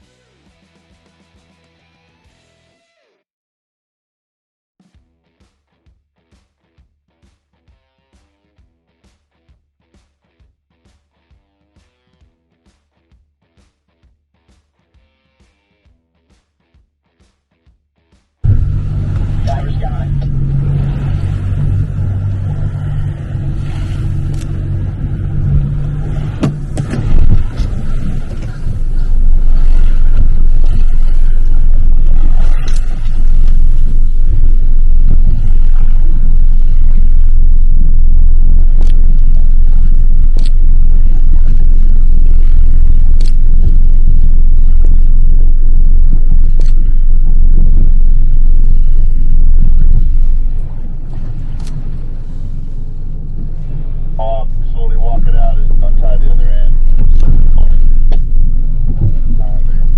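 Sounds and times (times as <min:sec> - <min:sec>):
vehicle low rumble: 0:18.4 - 0:59.9.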